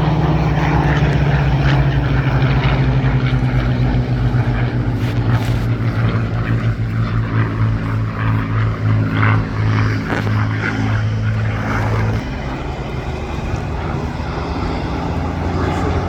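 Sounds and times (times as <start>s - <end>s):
propeller plane engines droning: 0.0s - 16.0s.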